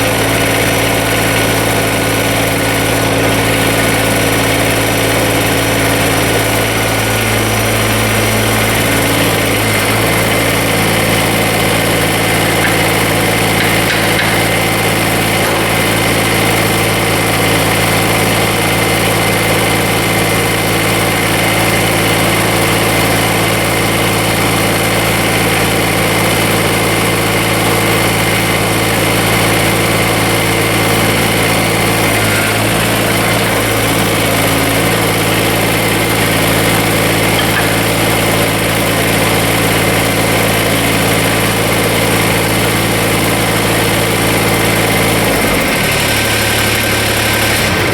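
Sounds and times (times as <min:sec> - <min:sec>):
tractor diesel engine running: 0:00.0 - 0:47.9.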